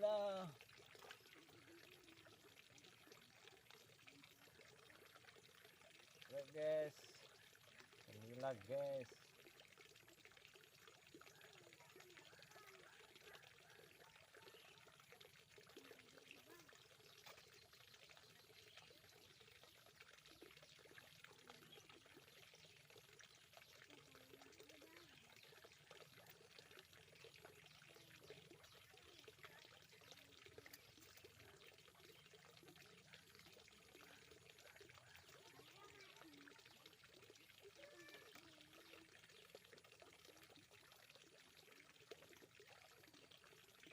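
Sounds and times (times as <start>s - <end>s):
faint distant voices: 0.0s - 43.9s
water pouring: 0.0s - 43.9s.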